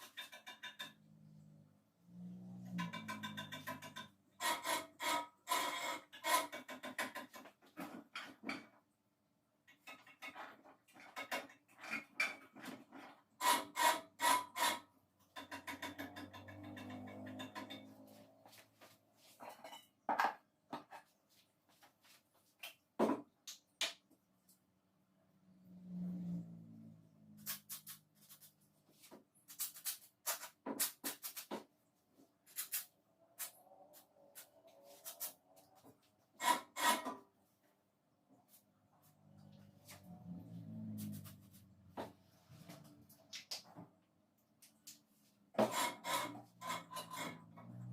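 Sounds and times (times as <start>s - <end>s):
metal parts knocking: 2.8s - 4.2s
clicks and taps of hands working: 21.8s - 24.6s, 43.1s - 46.0s.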